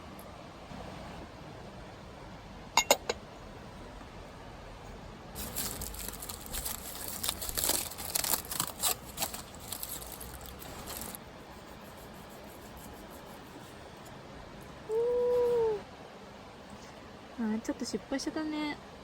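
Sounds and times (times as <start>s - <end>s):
crackling and crinkling: 5.4s - 14.2s.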